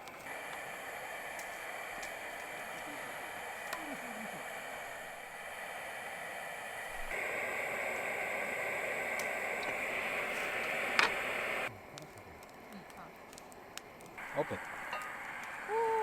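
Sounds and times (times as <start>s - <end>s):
faint clicks: 0.0s - 4.4s, 9.1s - 15.8s
pot hissing and bubbling: 0.0s - 16.0s.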